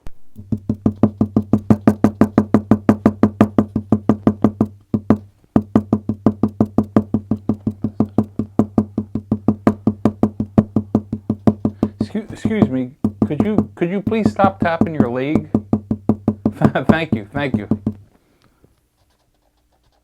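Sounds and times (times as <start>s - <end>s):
leg tapping dull thuds: 0.0s - 18.1s.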